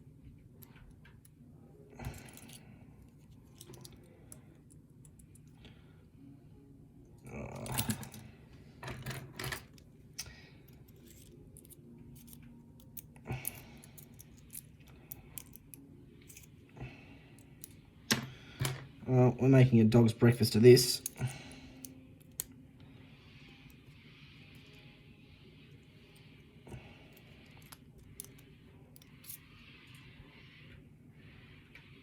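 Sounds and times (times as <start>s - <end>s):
lock and key metal clicks: 3.5s - 4.1s, 7.6s - 8.3s, 8.9s - 16.6s, 21.0s - 22.6s, 27.4s - 28.4s.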